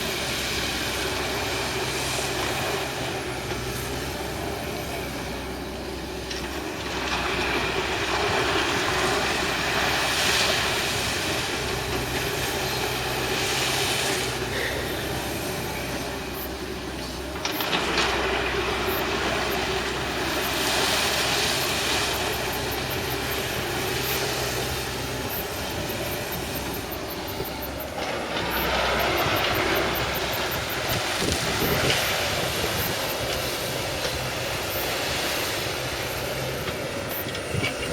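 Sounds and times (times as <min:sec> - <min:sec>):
excavator diesel engine hum: 0:00.0 - 0:37.9.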